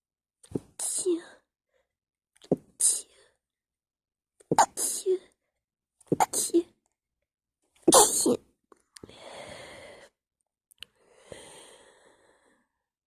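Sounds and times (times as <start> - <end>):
person sneezing: 4.5 - 5.2, 6.1 - 6.6, 7.9 - 8.4
breathy breaths: 9.0 - 10.2, 10.9 - 12.8.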